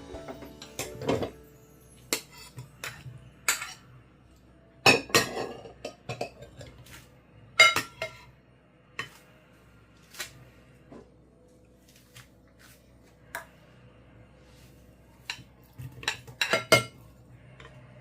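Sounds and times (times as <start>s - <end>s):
utensils and dishes clinking: 0.0s - 8.4s, 15.1s - 17.8s.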